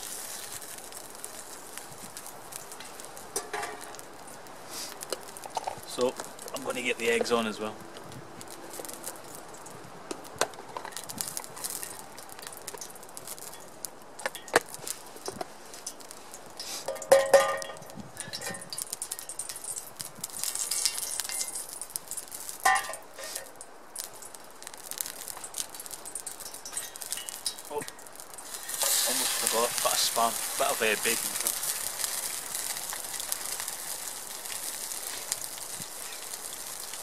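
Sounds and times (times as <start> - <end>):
food sizzling in a pan: 0.0 - 37.0
metal utensils scraping pan: 28.5 - 30.6.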